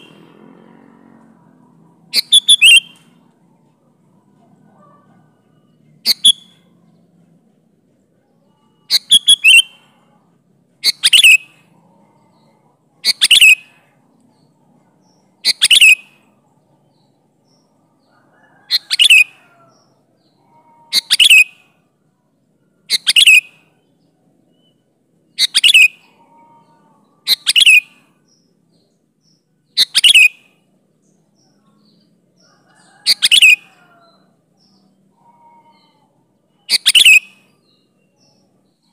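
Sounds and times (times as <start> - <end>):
bulbul calling: 0.0 - 0.2, 2.0 - 3.4, 6.0 - 6.7, 8.8 - 9.9, 10.8 - 11.7, 13.0 - 13.9, 15.0 - 17.7, 18.6 - 21.8, 22.9 - 23.8, 25.3 - 31.6, 32.9 - 38.9.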